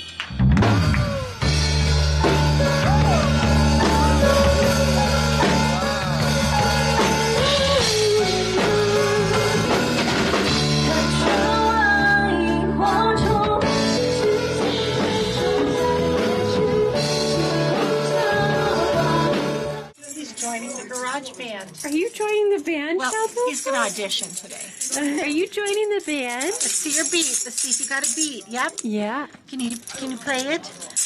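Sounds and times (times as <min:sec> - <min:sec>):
rock song with singer: 0:00.6 - 0:19.9.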